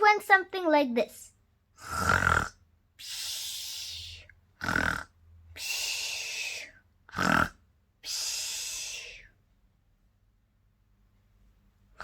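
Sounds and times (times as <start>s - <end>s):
person imitating snoring: 1.8s - 9.3s.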